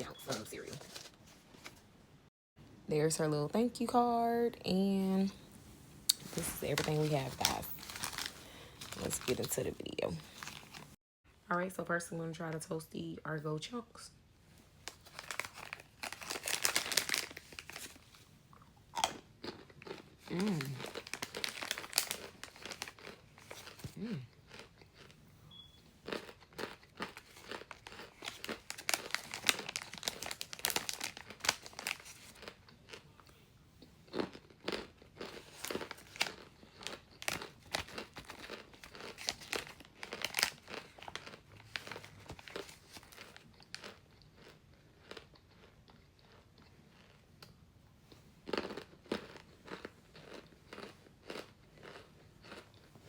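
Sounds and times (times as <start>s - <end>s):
crunchy food being chewed: 14.9s - 53.0s.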